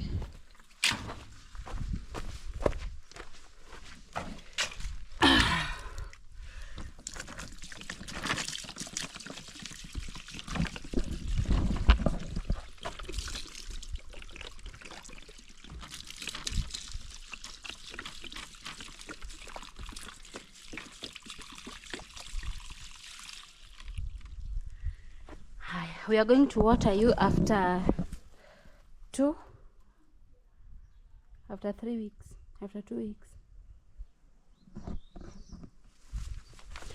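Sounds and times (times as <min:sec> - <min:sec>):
water splashing onto soil: 0:06.9 - 0:24.4.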